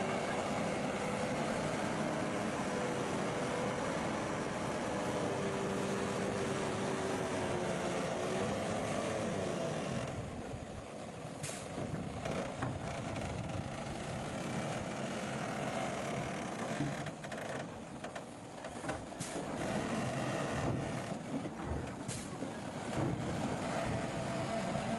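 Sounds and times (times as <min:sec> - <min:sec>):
heavy machinery engine drone: 0:00.0 - 0:24.9.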